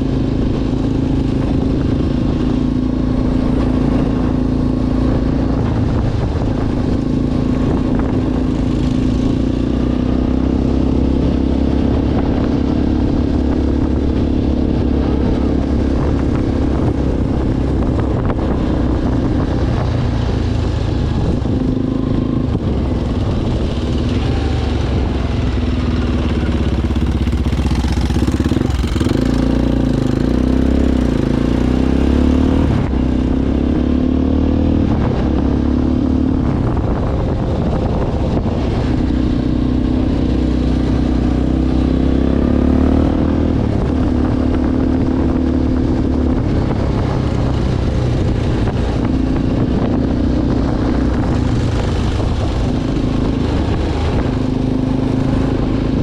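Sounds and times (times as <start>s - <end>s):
atv engine running: 0.0s - 56.0s.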